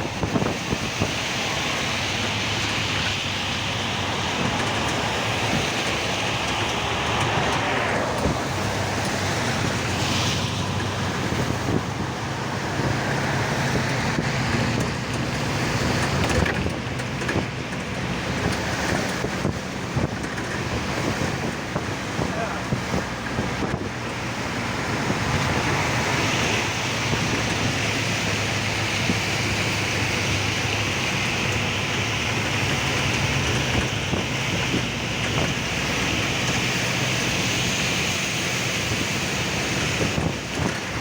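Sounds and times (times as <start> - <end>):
rain hiss: 0.0 - 41.0
tyres on wet road: 0.0 - 41.0
vehicle engine hum: 0.0 - 41.0.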